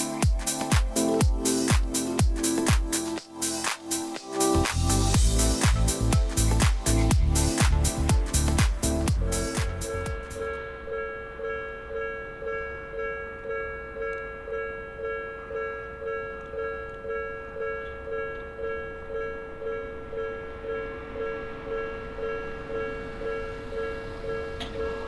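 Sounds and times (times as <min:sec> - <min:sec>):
level crossing warning bell: 0:10.4 - 0:25.0.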